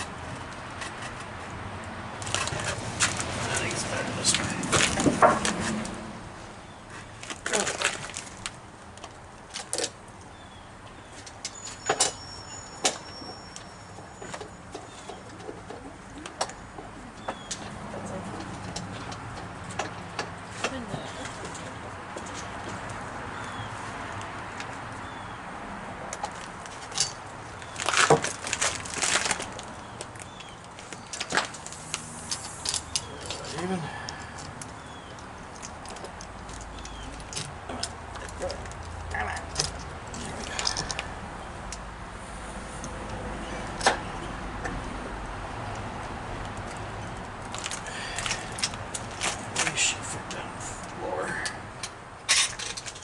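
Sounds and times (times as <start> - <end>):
wooden board knocks and clunks: 4.7 - 5.8.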